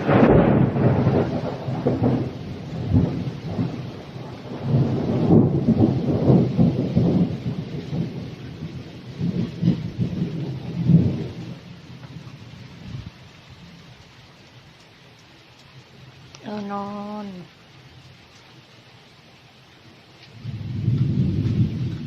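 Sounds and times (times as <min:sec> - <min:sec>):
rolling thunder: 0:00.0 - 0:13.8, 0:20.3 - 0:22.0
heavy rain: 0:00.0 - 0:22.0.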